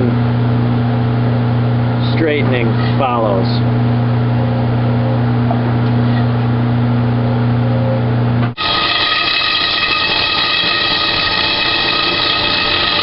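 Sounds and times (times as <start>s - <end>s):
electric machine hum: 0.0s - 13.0s
power tool whine: 8.6s - 13.0s.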